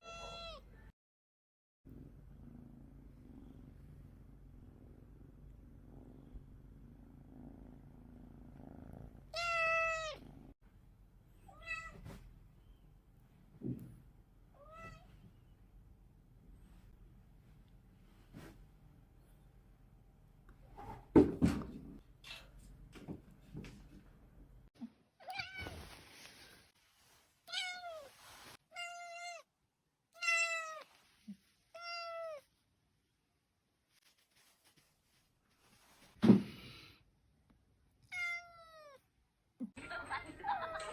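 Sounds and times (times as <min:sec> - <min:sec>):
cat meowing: 0:00.0 - 0:00.7, 0:09.3 - 0:10.2, 0:28.7 - 0:29.4, 0:30.2 - 0:30.9, 0:31.7 - 0:32.4, 0:38.0 - 0:39.0
cat purring: 0:01.9 - 0:10.6.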